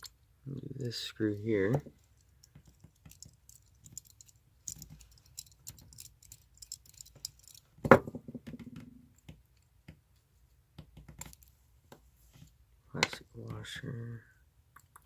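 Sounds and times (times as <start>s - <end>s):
metal clicks and rattles of screw: 2.0s - 7.7s.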